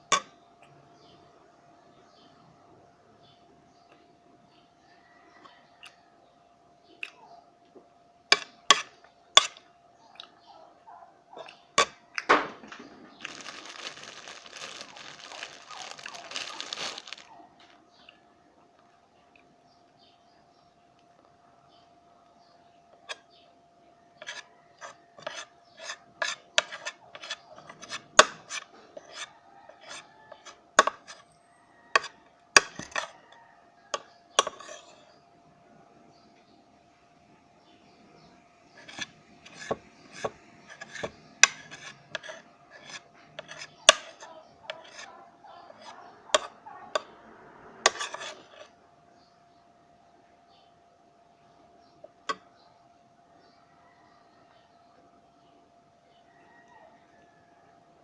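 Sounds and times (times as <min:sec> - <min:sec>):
faint steady hum: 0:00.0 - 0:58.0
crunching eating sounds: 0:11.4 - 0:19.5, 0:38.7 - 0:47.2, 0:47.9 - 0:48.7.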